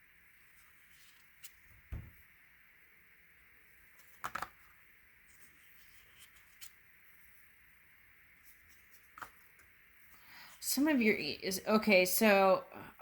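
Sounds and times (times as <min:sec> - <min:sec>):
soft low bump on table: 0:01.9 - 0:02.2.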